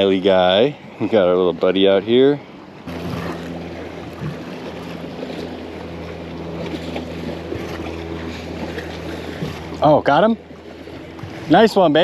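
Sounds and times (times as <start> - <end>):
boat motor humming: 0.0 - 12.0
water noise: 0.0 - 12.0
wind: 0.0 - 12.0.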